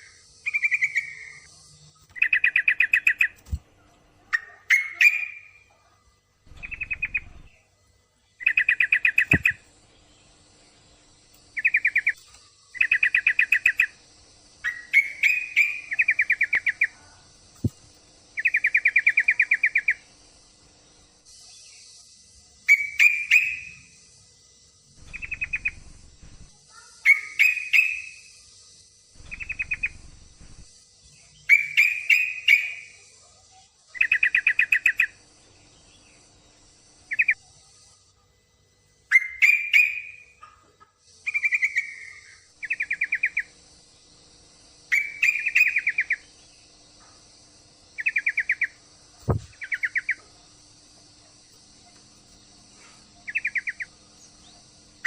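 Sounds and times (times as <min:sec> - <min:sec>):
bird chirping calls: 0:00.0 - 0:05.8, 0:06.5 - 0:07.7, 0:08.4 - 0:10.4, 0:11.5 - 0:14.0, 0:14.6 - 0:17.0, 0:22.7 - 0:23.9, 0:25.0 - 0:28.3, 0:29.2 - 0:33.0, 0:37.1 - 0:37.4, 0:39.1 - 0:43.6, 0:44.9 - 0:46.5, 0:48.0 - 0:50.3, 0:52.8 - 0:54.7
steady high hiss: 0:00.0 - 0:40.3, 0:41.0 - 0:55.0
thump: 0:49.2 - 0:49.6.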